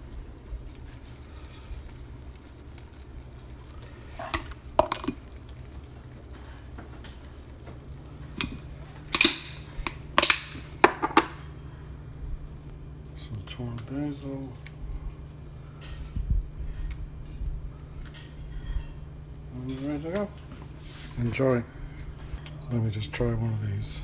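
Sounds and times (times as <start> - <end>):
steady low hum: 0.0 - 24.0
utensil clinking against pot: 8.3 - 11.4.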